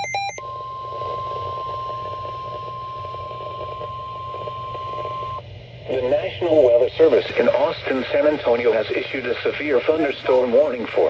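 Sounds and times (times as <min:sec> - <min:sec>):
steady alarm tone: 0:00.0 - 0:05.4
low hum and hiss: 0:00.0 - 0:11.0.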